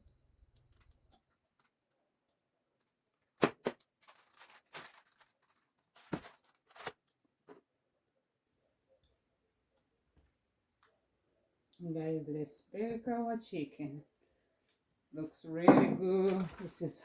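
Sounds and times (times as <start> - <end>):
crinkly rustling: 0.0 - 8.2, 15.8 - 17.0.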